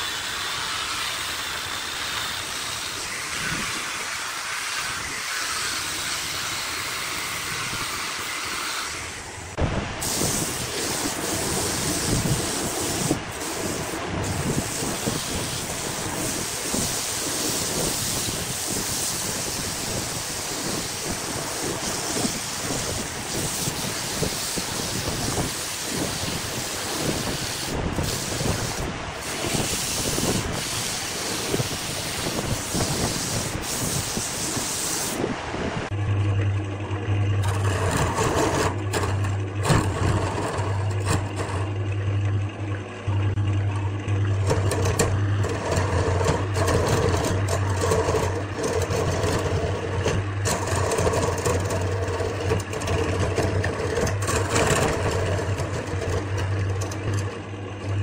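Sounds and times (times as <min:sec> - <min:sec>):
tool rasping spinning wood: 0:00.0 - 0:35.2, 0:37.4 - 0:41.9, 0:44.3 - 0:58.0
wood lathe hissing: 0:00.0 - 0:35.2, 0:37.4 - 0:41.8, 0:44.3 - 0:57.6.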